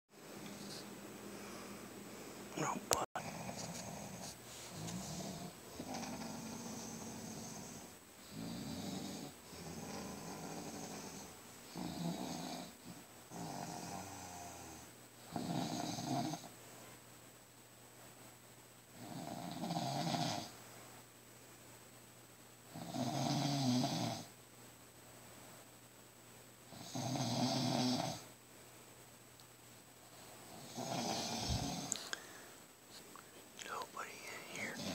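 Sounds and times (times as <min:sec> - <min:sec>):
man snoring loudly: 0:04.8 - 0:12.7, 0:13.3 - 0:16.4, 0:19.0 - 0:20.5, 0:22.7 - 0:24.3, 0:26.7 - 0:28.3, 0:30.6 - 0:32.0, 0:34.6 - 0:34.9.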